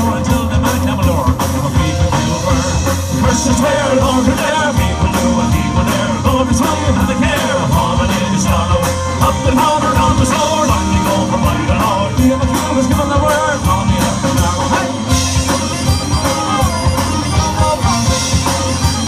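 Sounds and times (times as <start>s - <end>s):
driving drum beat: 0.0s - 19.0s
person singing: 0.0s - 19.0s
up-tempo rock music: 0.0s - 19.0s.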